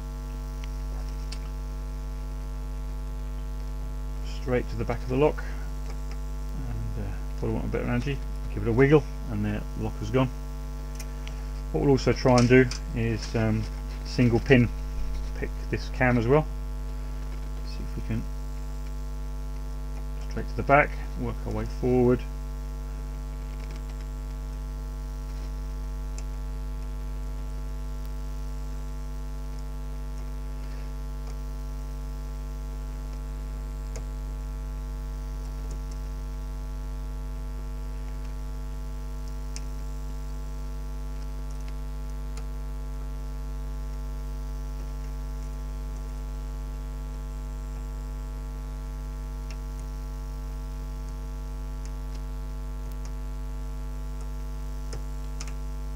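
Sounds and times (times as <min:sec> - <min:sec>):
electrical mains hum: 0:00.0 - 0:55.9.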